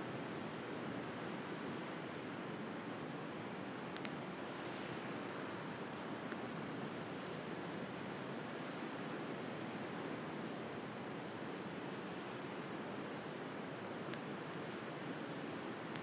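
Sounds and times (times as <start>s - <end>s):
bonfire crackling and popping: 15.7s - 16.0s.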